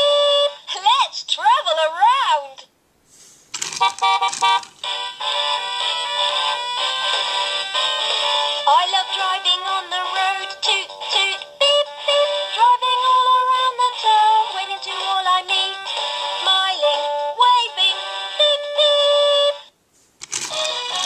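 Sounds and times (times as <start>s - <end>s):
toy electronic singing voice: 0.0s - 0.6s, 8.2s - 19.7s.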